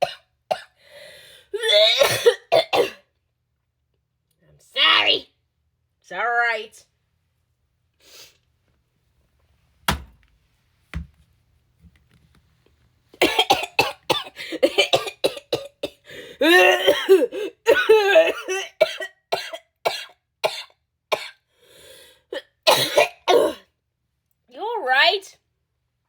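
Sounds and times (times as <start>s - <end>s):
woman coughing: 0.0s - 0.7s, 1.6s - 3.1s, 13.2s - 21.4s, 22.4s - 23.7s.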